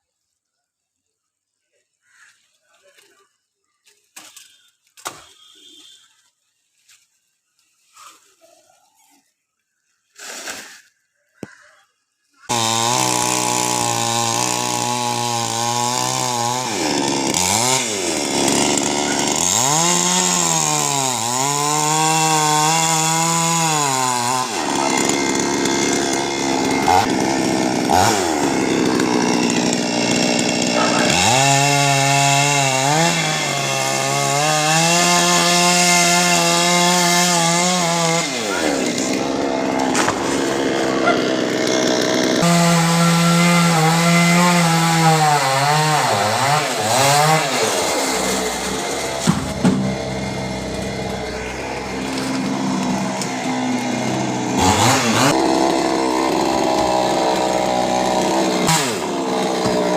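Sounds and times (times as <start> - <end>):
chainsaw cutting: 12.4 - 59.9.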